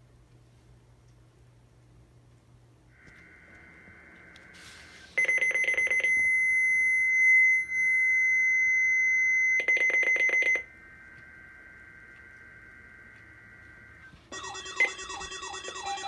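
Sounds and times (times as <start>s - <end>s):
steady high-pitched tone: 3.0s - 16.0s
rapid pulsing beeps: 5.2s - 16.0s.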